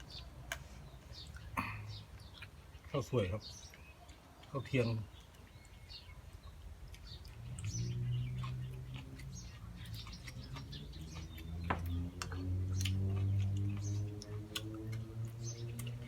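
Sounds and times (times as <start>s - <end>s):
birds chirping: 0.0s - 16.0s
low motor hum: 7.0s - 16.0s.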